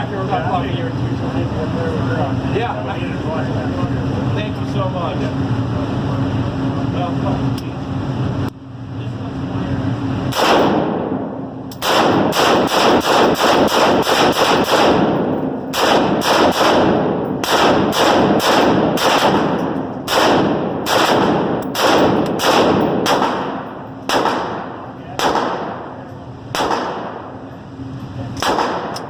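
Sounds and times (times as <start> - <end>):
semi-automatic gunfire: 10.3 - 11.2, 11.8 - 27.4, 28.4 - 29.0.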